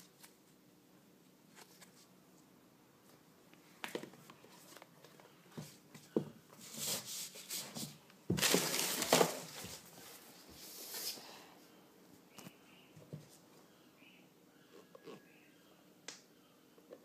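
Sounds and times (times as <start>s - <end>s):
packaging rustling: 8.3s - 10.0s.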